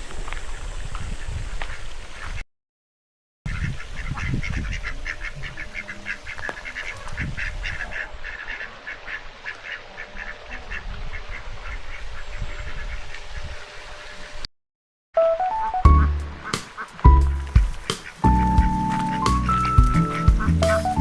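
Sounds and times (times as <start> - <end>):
ducks quacking: 3.5 - 14.4, 15.9 - 21.0.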